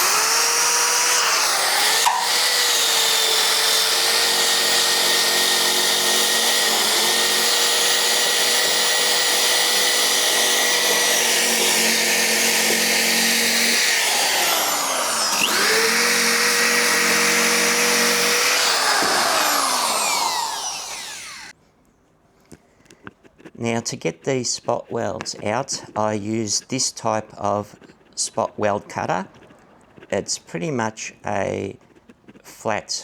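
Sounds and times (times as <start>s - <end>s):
electric power tool on metal panel: 0.0s - 21.6s.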